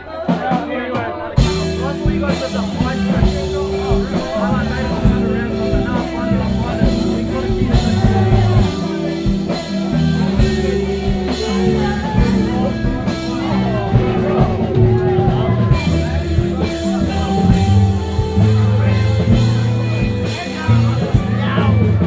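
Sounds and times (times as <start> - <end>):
bass: 0.0 - 22.0
drum kit: 0.0 - 22.0
electric guitar: 0.0 - 22.0
person singing: 0.0 - 22.0.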